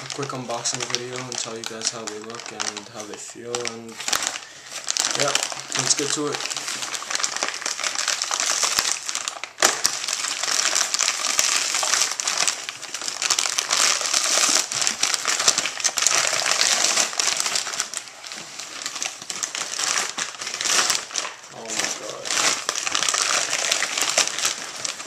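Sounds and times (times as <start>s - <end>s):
packaging crinkling and rustling: 0.0s - 25.0s.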